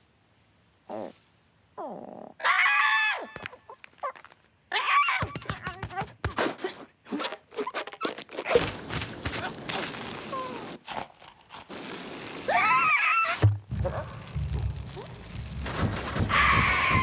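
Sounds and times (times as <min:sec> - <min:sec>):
cartoon crunching and crinkling: 0:03.4 - 0:04.6, 0:05.3 - 0:17.0.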